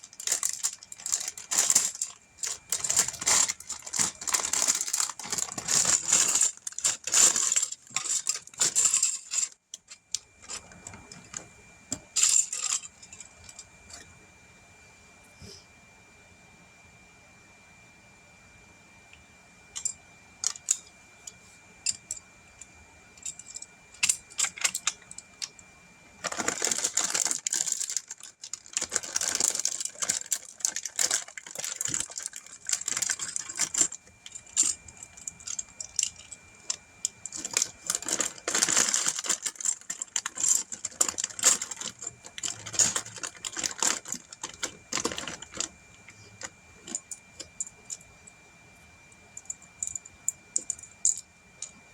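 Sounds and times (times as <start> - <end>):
plastic pieces rattling and clicking: 0.0 - 14.0, 23.2 - 25.5, 26.2 - 45.7.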